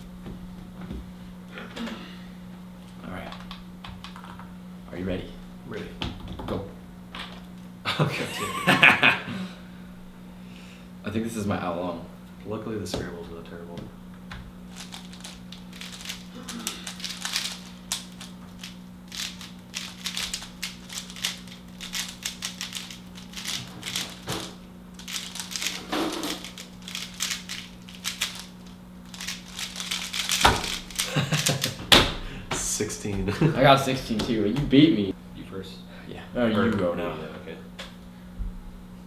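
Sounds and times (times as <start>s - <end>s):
steady low hum: 0.0s - 39.0s
speedcubes clicking while turned: 14.7s - 31.8s.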